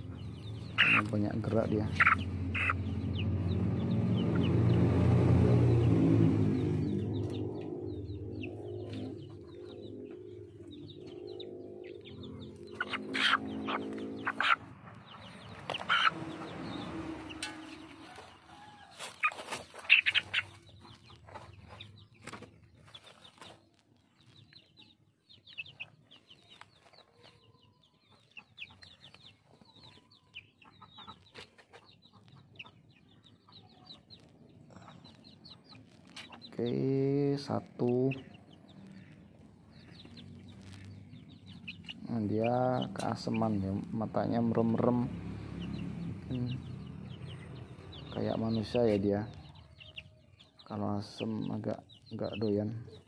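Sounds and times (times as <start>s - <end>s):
low drone: 0.0s - 18.2s
chickens clucking: 0.0s - 53.0s.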